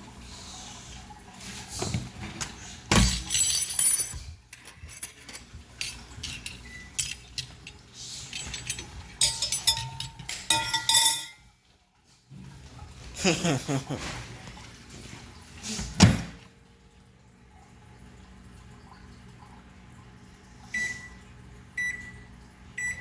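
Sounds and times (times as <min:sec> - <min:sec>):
fork clinking on dishes: 0:04.6 - 0:07.8, 0:08.4 - 0:11.4.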